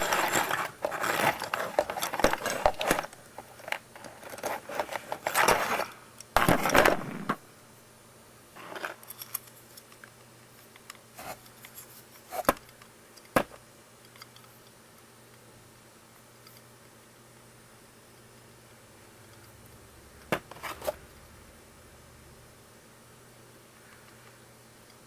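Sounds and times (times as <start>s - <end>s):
hands scraping plastic parts: 0.0s - 7.4s.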